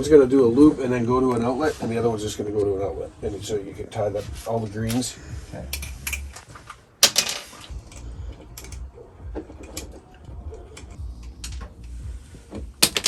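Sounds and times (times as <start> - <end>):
clicks of handling wires: 5.7 - 13.0.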